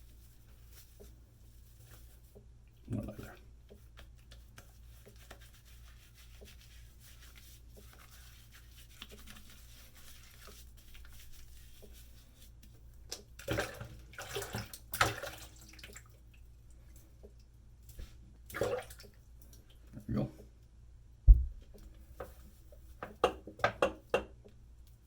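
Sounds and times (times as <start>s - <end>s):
shaving lather squishing: 0.1s - 16.4s.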